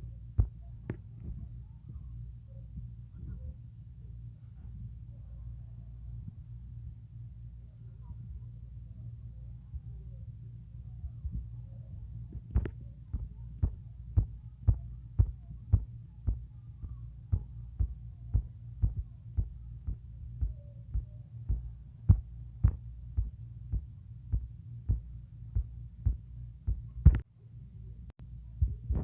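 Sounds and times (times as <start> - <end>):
soft low thumps: 0.0 - 2.1, 11.1 - 27.2, 28.4 - 29.0
low steady hum: 0.0 - 29.0.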